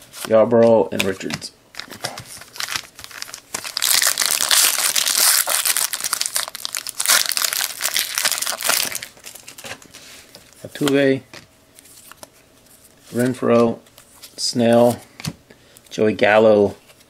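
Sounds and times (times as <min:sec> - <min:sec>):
cards rustling and clicking: 0:00.2 - 0:15.4
plastic wrapper crinkling: 0:01.7 - 0:09.9.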